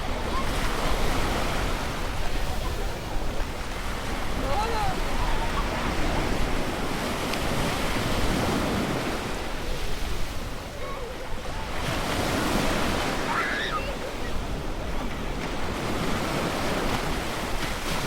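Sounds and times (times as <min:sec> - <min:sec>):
people chatting: 0:00.0 - 0:06.7, 0:09.1 - 0:14.8
ocean surf breaking: 0:00.0 - 0:18.0.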